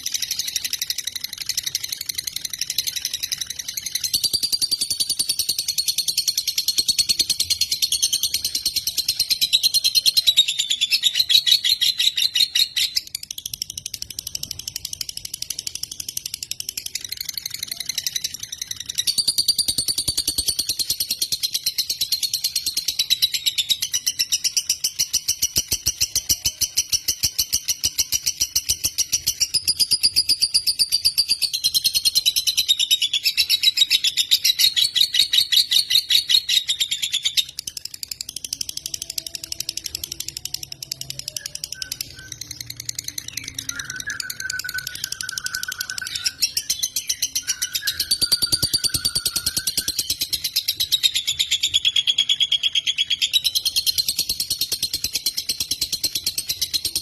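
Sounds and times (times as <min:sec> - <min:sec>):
lovebird chattering trill: 0:16.9 - 0:57.0.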